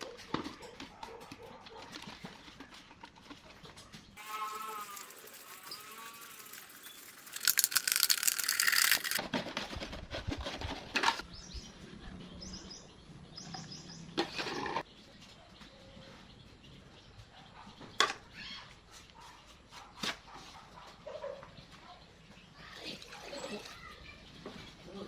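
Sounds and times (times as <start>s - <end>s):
materials rustling and clattering: 6.4s - 11.2s.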